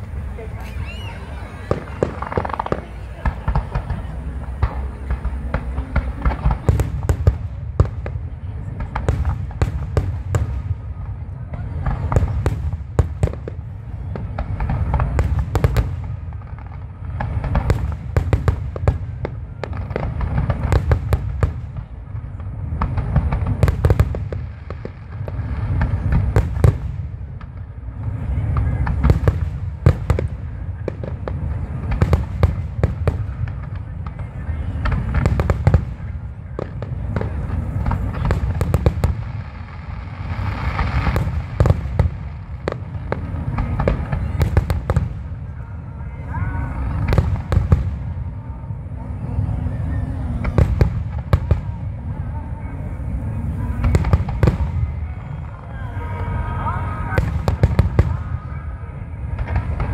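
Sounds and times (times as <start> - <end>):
fireworks booming: 0.0 - 59.9
fireworks cracking: 0.0 - 59.9
firework hiss: 36.8 - 45.4.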